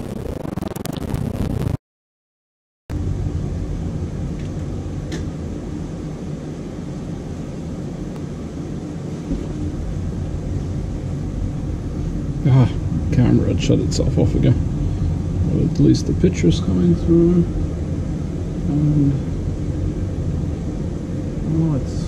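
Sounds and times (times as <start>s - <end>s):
low hum and rumble: 0.0s - 1.8s, 2.9s - 22.0s.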